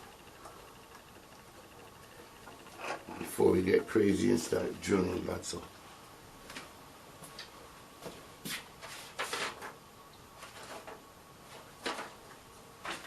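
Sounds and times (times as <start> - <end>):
faint thin whine: 0.0 - 7.8.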